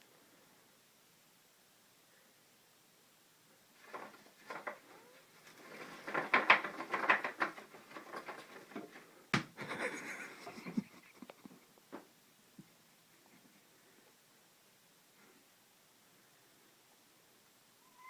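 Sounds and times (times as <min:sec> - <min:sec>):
crackling and rustling of objects: 0:03.7 - 0:14.2.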